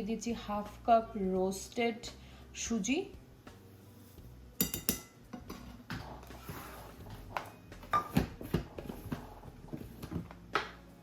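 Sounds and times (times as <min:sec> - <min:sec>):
utensils clinking against mixing bowl: 0:04.6 - 0:05.2.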